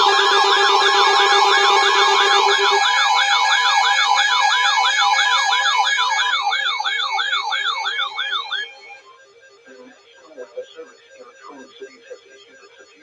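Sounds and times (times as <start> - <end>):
yelp siren: 0.0 - 9.0.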